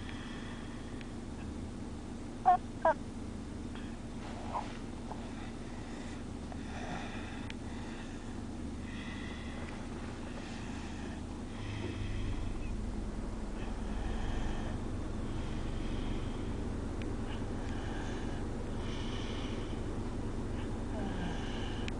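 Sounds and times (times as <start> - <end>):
car rumble: 0.0 - 21.9
toddler snoring: 20.9 - 21.8.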